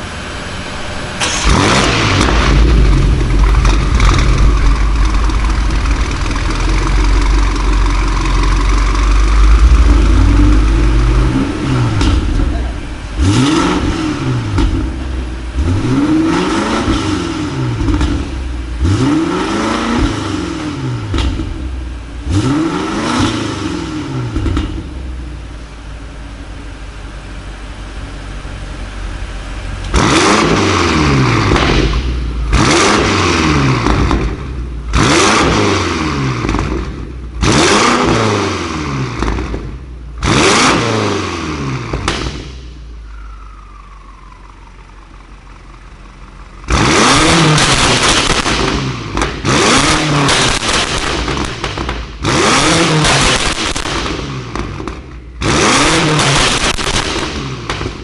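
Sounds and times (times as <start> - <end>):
car engine revving: 0.0 - 26.7, 28.0 - 58.0
sharp engine rev blips: 1.2 - 6.6, 8.2 - 21.4, 40.2 - 44.7, 46.6 - 58.0.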